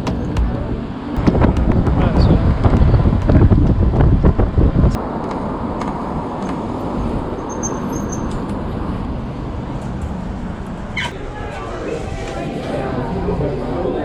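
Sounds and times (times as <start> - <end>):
wind buffeting microphone: 0.0 - 5.2.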